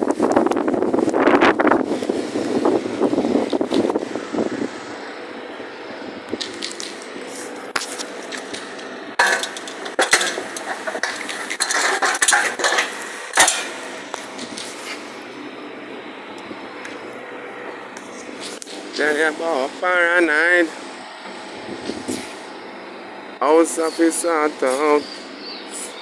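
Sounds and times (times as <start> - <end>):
metal tools clinking and clattering: 9.2 - 13.9.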